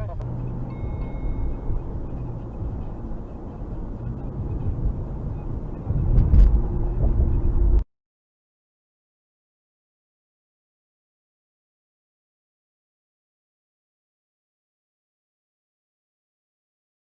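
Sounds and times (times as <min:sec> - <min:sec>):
road and engine rumble: 0:00.0 - 0:07.9.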